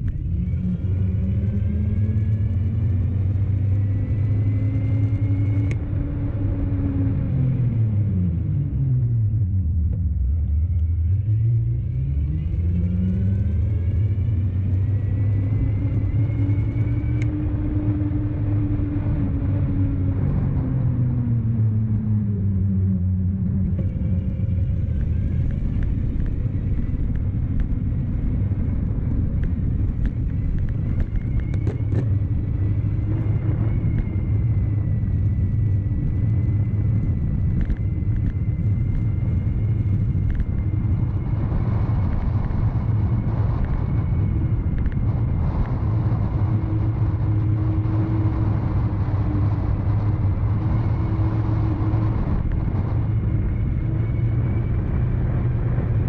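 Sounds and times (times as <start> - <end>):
low rumble: 0.0 - 56.0
electric bike motor whine: 22.2 - 56.0.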